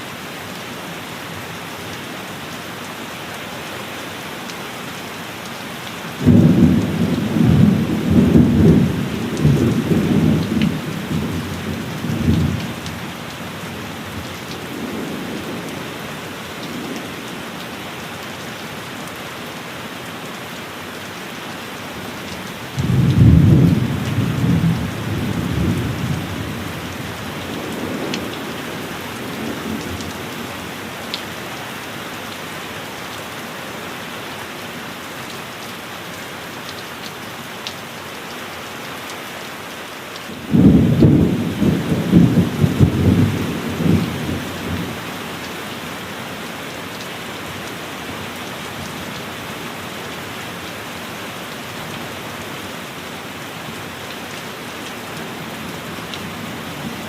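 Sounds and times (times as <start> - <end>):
heavy rain: 0.0 - 57.0
rolling thunder: 40.5 - 44.8.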